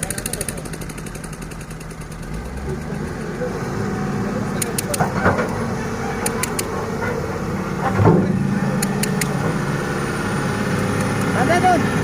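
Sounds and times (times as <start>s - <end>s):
sharp metallic clicks: 0.0s - 2.6s, 4.5s - 5.2s, 6.2s - 6.7s, 8.8s - 9.5s
excavator engine humming: 0.0s - 12.0s.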